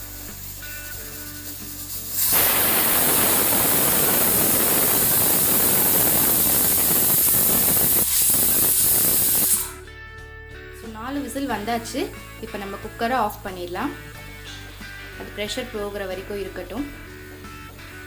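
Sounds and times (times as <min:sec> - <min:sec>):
pressure cooker steam hiss: 0:00.0 - 0:09.8.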